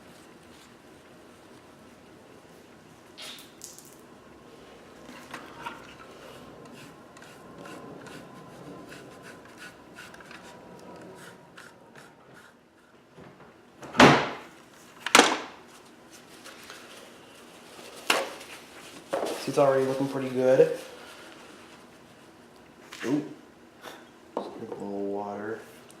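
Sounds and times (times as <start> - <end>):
hands rubbing and scrubbing: 5.8 - 12.9.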